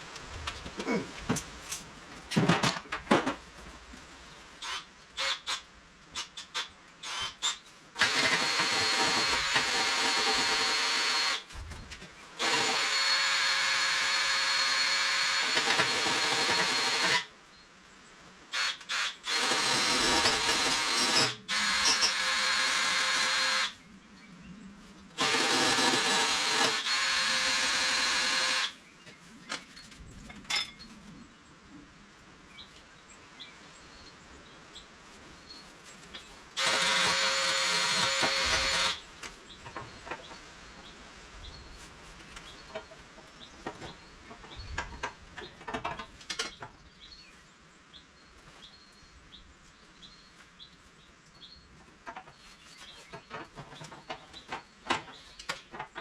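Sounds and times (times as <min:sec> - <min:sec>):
power tool motor running: 0:08.0 - 0:11.4, 0:12.4 - 0:17.3, 0:18.6 - 0:23.7, 0:25.2 - 0:28.7, 0:36.6 - 0:39.0.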